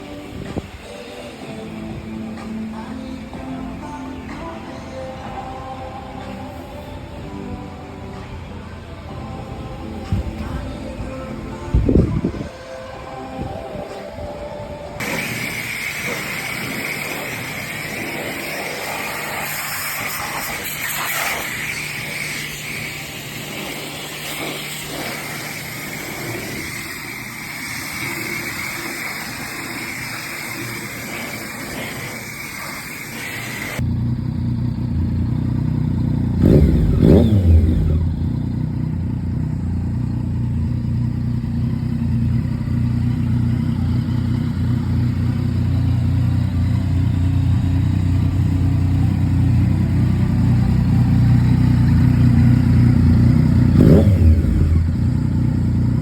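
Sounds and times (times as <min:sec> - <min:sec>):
vehicle hiss with high hum: 0:00.0 - 0:56.0
motorcycle engine idling: 0:13.1 - 0:56.0.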